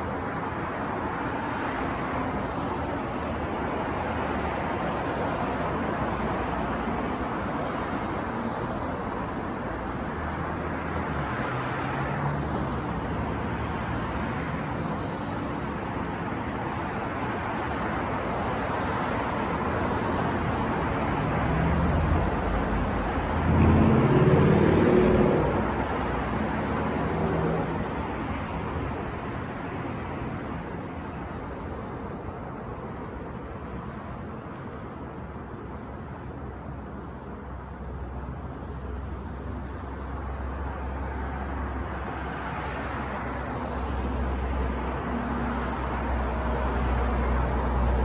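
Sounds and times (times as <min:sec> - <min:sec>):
passing cars: 0:00.0 - 0:48.0
heavy vehicle engine passing: 0:21.0 - 0:28.8.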